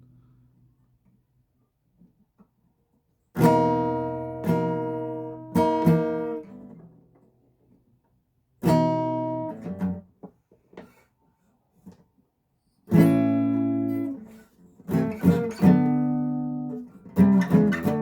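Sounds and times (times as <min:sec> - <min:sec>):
acoustic guitar strums: 0:03.4 - 0:06.8, 0:08.6 - 0:10.1, 0:12.9 - 0:18.0.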